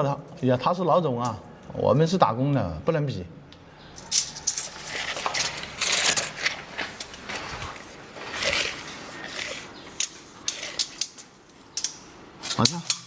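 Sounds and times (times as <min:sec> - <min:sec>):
small hard parts clinking: 0:04.0 - 0:13.0
clicks and knocks of building work: 0:10.0 - 0:13.0.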